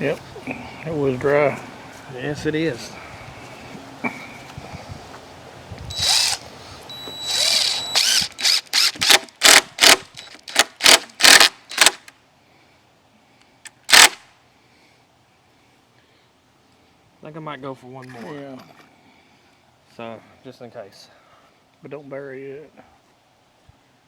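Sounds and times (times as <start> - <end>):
power drill driving screw into wood: 5.9 - 12.1, 13.7 - 14.2.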